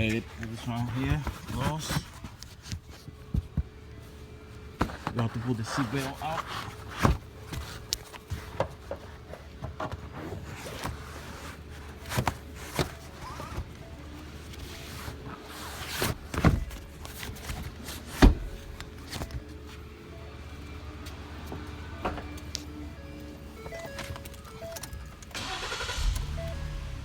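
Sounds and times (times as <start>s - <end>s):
faint background music: 0.0s - 27.0s
car seat trim knocking and rubbing: 15.0s - 19.4s.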